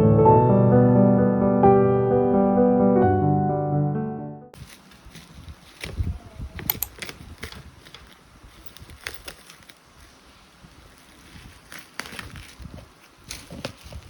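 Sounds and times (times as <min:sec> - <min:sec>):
faint background noise: 0:04.6 - 0:14.0.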